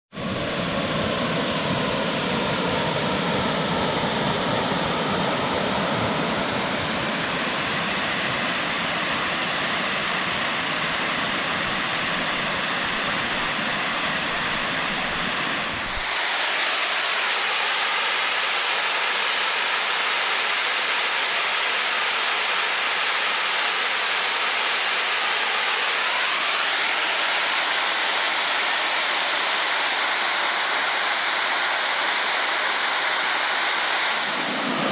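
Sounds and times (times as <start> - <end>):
bright hissy falling water: 9.2 - 34.9.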